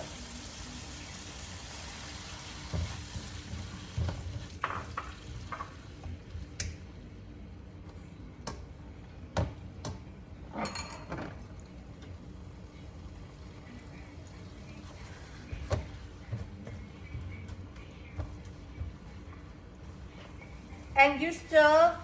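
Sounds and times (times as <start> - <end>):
meat sizzling in a pan: 0.0 - 6.4.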